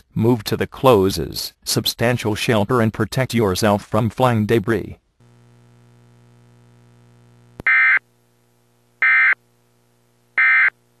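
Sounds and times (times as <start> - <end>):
faint steady hum: 0.0 - 11.0
harsh buzzing data bursts: 5.2 - 11.0.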